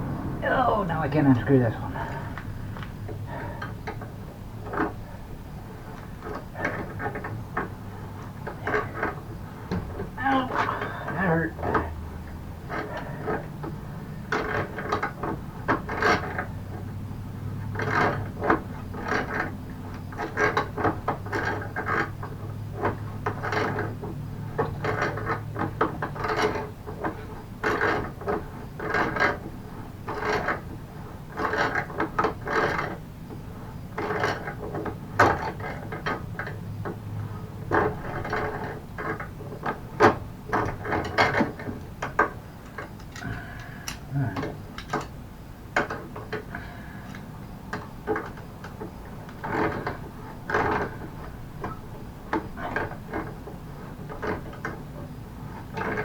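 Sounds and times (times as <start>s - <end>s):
hand tool ratcheting clicks: 43.0s - 45.1s.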